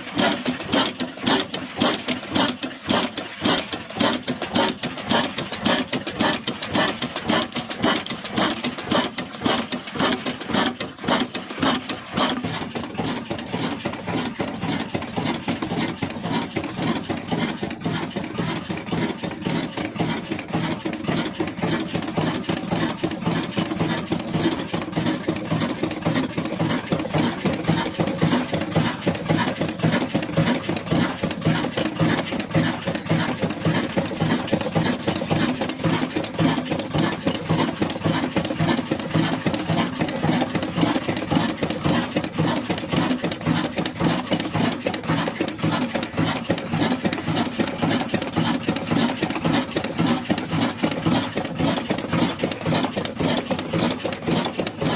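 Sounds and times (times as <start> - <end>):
diesel engine running: 0.0 - 54.9.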